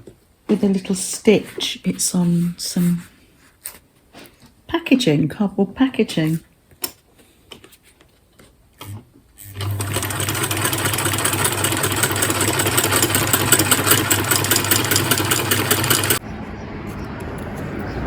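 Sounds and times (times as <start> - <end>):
sewing machine stitching: 8.8 - 16.2.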